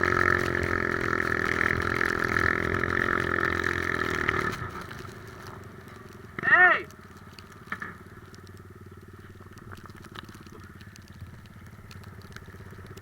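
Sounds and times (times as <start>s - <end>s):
atv engine running: 0.0s - 13.0s
faint clicks: 4.3s - 13.0s.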